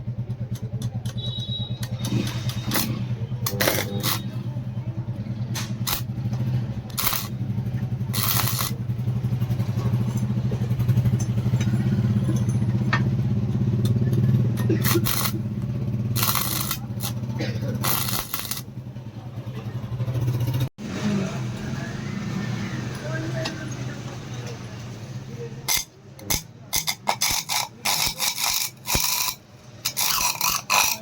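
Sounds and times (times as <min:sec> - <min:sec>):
motor humming: 0:05.6 - 0:10.2.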